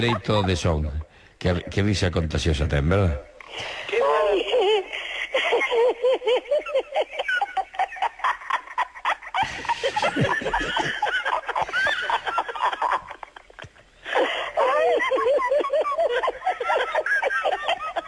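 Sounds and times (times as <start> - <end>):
person laughing heartily: 4.0 - 18.0.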